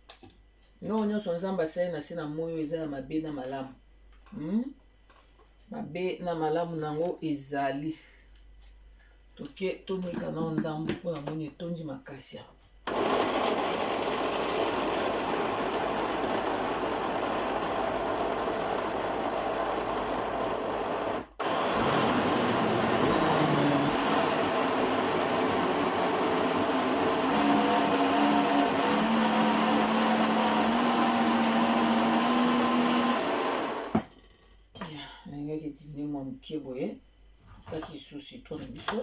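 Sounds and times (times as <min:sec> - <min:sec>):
electric blender running: 0:12.9 - 0:34.0.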